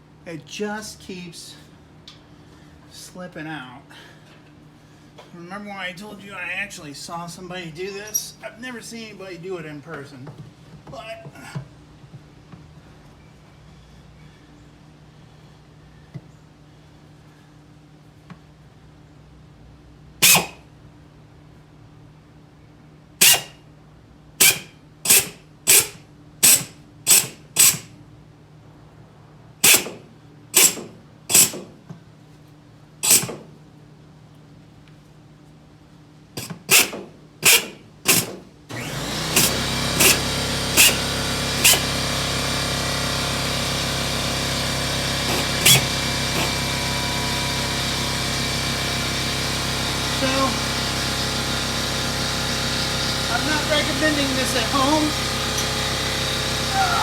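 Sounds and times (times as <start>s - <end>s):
steady machine noise: 20.2s - 20.6s, 24.4s - 27.9s, 29.6s - 31.7s, 33.0s - 33.4s, 36.6s - 57.0s
power tool bursts: 20.2s - 20.7s, 23.2s - 23.6s, 24.4s - 28.0s, 29.6s - 31.8s, 33.0s - 33.6s, 36.4s - 57.0s.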